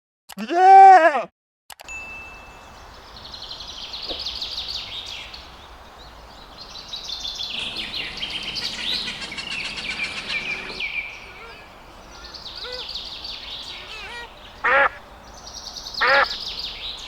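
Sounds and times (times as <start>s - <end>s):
low background noise: 2.0s - 17.0s
small bird chirping: 3.2s - 17.0s.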